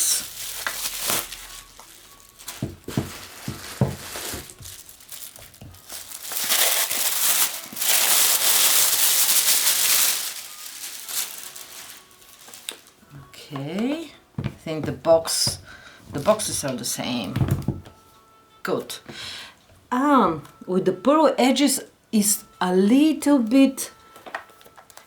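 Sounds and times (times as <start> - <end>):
packaging crinkling and tearing: 0.0 - 13.0, 24.1 - 25.0.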